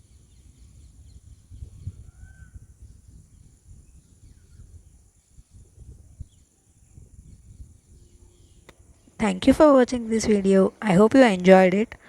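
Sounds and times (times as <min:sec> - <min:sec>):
bird call and chirps: 0:00.0 - 0:05.6, 0:06.2 - 0:09.4
low rumble on microphone: 0:00.0 - 0:10.4.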